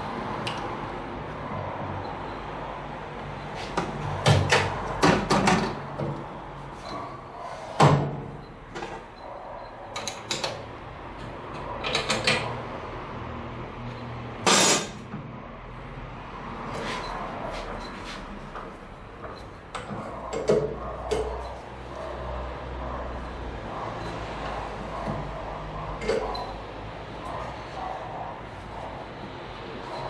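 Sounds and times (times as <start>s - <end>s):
hard parts knocking and clattering: 3.3s - 7.2s, 7.8s - 12.8s, 14.0s - 15.4s, 16.7s - 21.6s, 26.0s - 26.6s.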